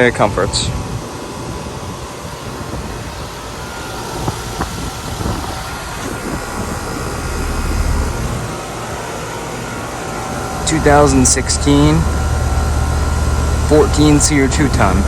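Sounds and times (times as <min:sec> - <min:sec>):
compressor hum: 0:00.0 - 0:15.0
heat pump fan whoosh: 0:00.0 - 0:15.0
low rumble: 0:04.0 - 0:09.0, 0:10.3 - 0:15.0.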